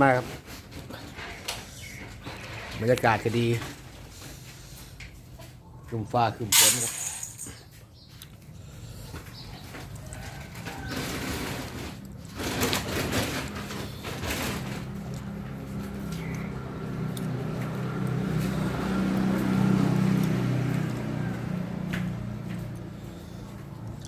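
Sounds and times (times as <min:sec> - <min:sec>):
vehicle engine humming: 0:07.3 - 0:24.0.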